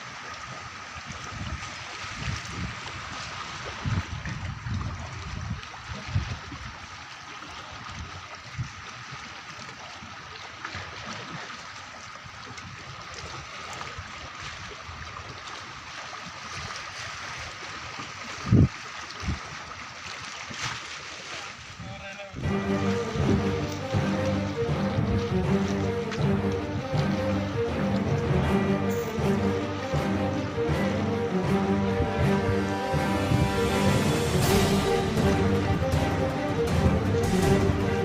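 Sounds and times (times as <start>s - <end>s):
water lapping and trickling: 0.0s - 38.0s
low thumps: 30.7s - 38.0s.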